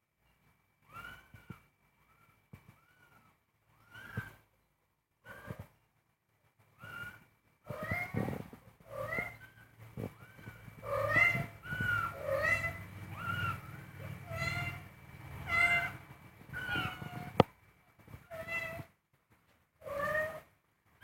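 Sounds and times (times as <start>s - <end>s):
kittens mewing: 6.8s - 17.5s.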